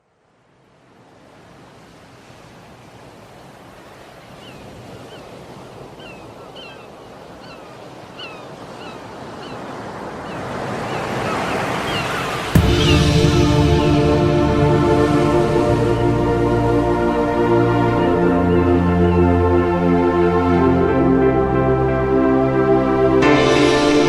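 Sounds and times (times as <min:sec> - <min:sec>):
sea waves washing ashore: 0:00.3 - 0:24.0.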